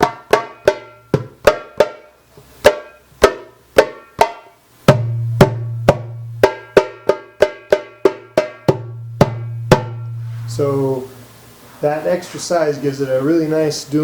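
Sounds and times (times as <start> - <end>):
hand drum strikes: 0.0 - 10.6
steady low hum: 4.7 - 14.0.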